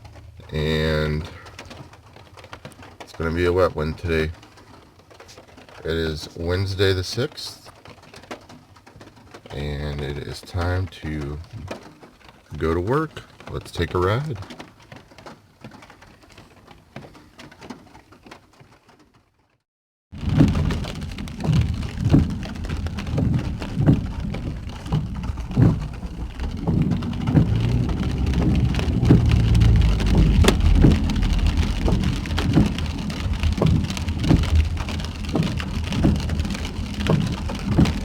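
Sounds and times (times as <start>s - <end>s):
big raindrops thudding: 0.0s - 19.1s, 20.1s - 38.0s
heavy rain on vehicle roof: 0.0s - 19.4s, 20.1s - 38.0s
low rumble: 20.2s - 38.0s.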